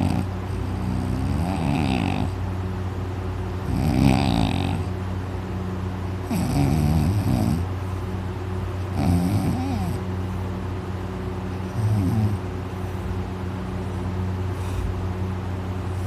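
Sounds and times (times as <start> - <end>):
man snoring loudly: 0.0 - 2.4, 3.7 - 4.9, 6.3 - 7.7, 8.9 - 10.0, 11.7 - 12.4
steady low hum: 0.0 - 16.0.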